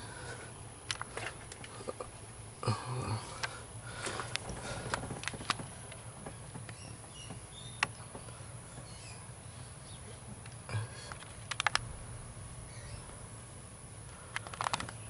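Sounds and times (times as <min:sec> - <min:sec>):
low steady hum: 0:00.0 - 0:15.0
plastic parts clicking: 0:00.9 - 0:01.7, 0:03.4 - 0:06.0, 0:10.4 - 0:11.9, 0:14.3 - 0:15.0.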